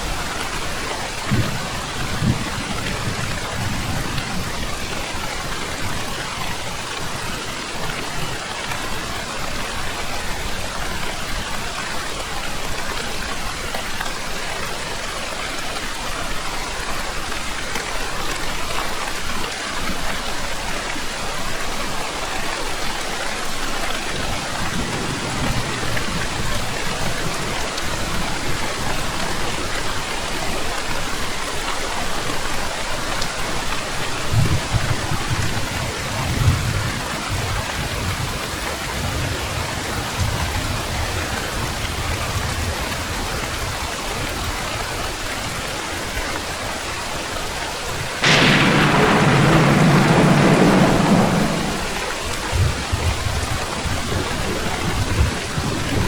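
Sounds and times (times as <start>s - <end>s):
heavy rain falling: 0.0s - 56.0s
low thunder rumbling: 48.2s - 56.0s.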